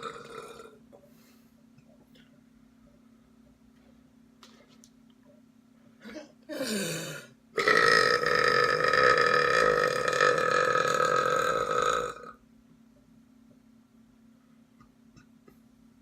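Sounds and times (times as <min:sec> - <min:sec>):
person belching: 0:00.0 - 0:00.8, 0:06.0 - 0:12.4.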